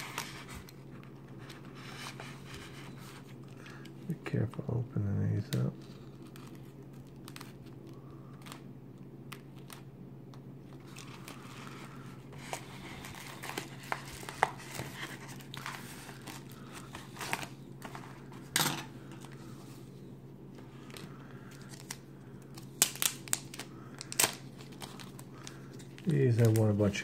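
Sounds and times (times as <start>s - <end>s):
steady low hum: 0.0s - 27.0s
packaging crinkling and tearing: 5.5s - 9.9s, 10.6s - 19.6s, 20.8s - 27.0s.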